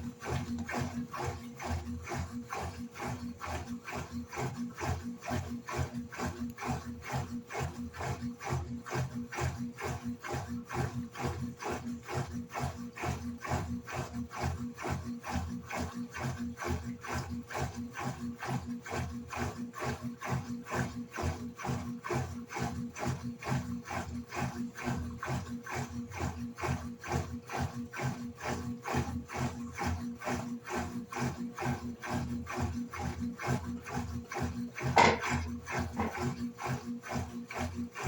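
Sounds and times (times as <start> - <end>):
washing machine churning and swishing: 0.0 - 38.0
motor humming: 34.7 - 36.6.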